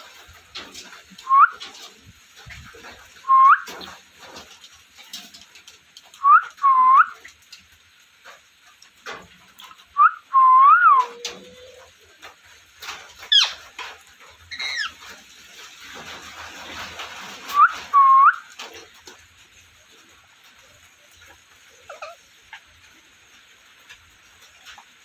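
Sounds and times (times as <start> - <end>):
parrot whistling and chirping: 1.2 - 1.6, 3.3 - 3.7, 6.2 - 7.2, 10.0 - 11.2, 13.3 - 13.6, 14.5 - 15.0, 17.5 - 18.4.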